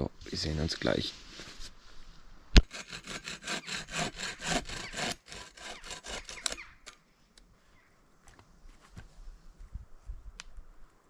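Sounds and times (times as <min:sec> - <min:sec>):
hand saw cutting wood: 0:02.6 - 0:06.6.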